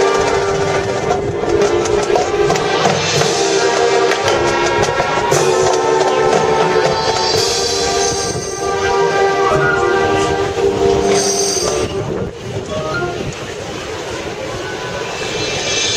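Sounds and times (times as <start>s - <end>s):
drumline strikes: 0.0s - 11.9s
brass sustained notes: 0.0s - 13.3s.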